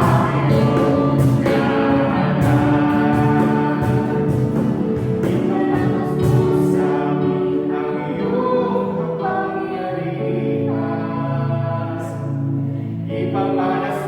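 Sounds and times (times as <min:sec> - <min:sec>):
instrumental accompaniment: 0:00.0 - 0:13.8
choir singing held notes: 0:00.0 - 0:14.0.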